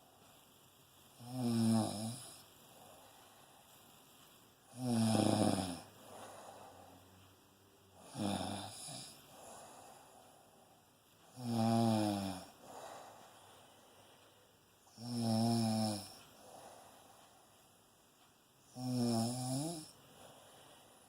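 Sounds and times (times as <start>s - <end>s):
loud snoring: 1.2s - 2.4s, 4.7s - 5.9s, 8.0s - 9.2s, 11.3s - 12.6s, 14.9s - 16.2s, 18.7s - 20.0s.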